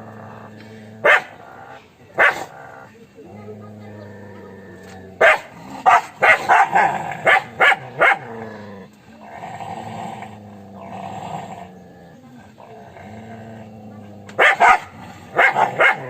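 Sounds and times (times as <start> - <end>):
dog growling: 0.0 - 16.0
dog barking: 1.0 - 1.4, 2.2 - 2.6, 5.2 - 8.4, 14.4 - 16.0.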